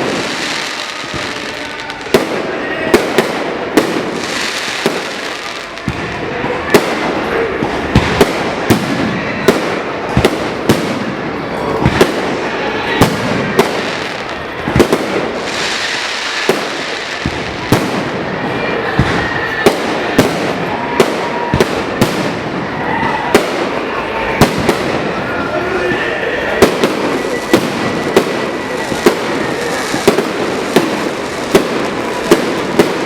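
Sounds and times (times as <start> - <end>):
fireworks bangs: 0.0 - 33.0.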